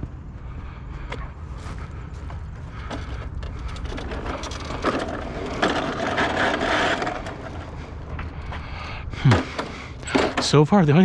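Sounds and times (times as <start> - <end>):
low steady rumble: 0.0 - 11.0
junk scraping and knocking: 2.3 - 11.0.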